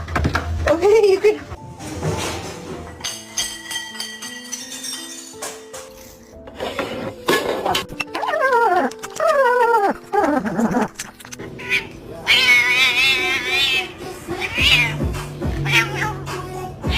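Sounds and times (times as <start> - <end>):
puppy whining: 8.0 - 15.0.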